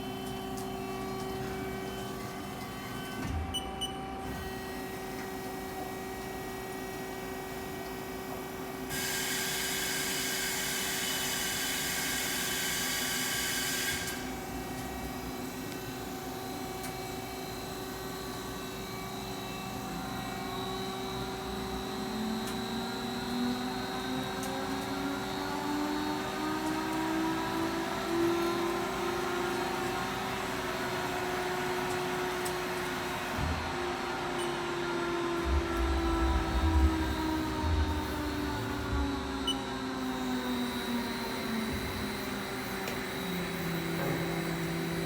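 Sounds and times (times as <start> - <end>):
lathe electrical and hydraulic hum: 0.0 - 45.0
spindle whine rising: 32.2 - 42.9.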